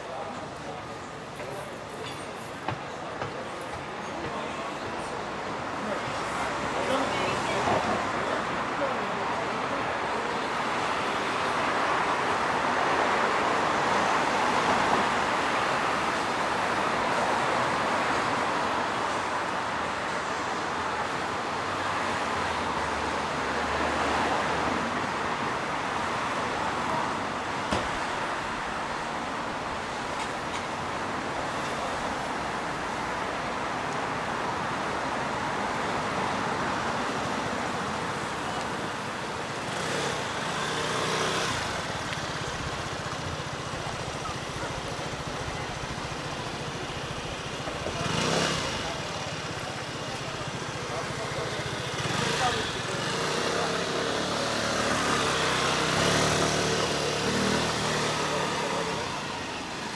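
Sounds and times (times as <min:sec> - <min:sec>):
city street traffic: 0:00.0 - 0:59.9.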